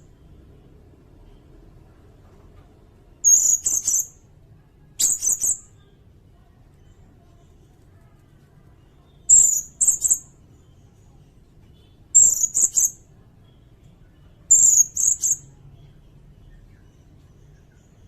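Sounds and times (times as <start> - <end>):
high-pitched bird calls: 3.2 - 4.3, 5.0 - 5.8, 9.1 - 10.6, 12.1 - 13.2, 14.4 - 15.6.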